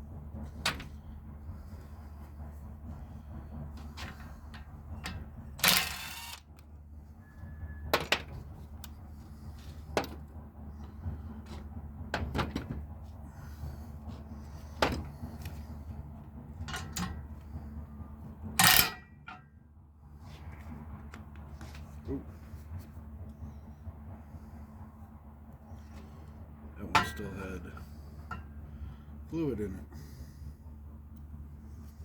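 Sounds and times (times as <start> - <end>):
low hum: 0.0 - 32.0
metal parts clicking and knocking: 5.0 - 6.5, 18.6 - 19.4
rattling metal clatter: 16.5 - 17.4.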